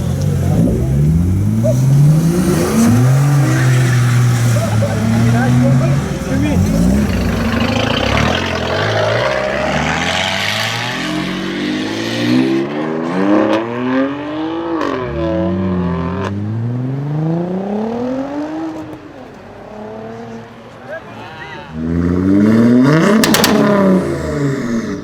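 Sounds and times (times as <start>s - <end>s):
car engine accelerating hard: 0.0s - 20.7s, 21.8s - 25.0s
sharp exhaust cracks: 23.0s - 24.5s.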